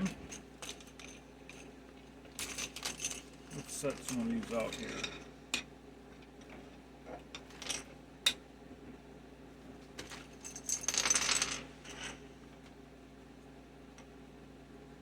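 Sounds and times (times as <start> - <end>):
keycaps rattling and rustling: 2.3 - 5.0.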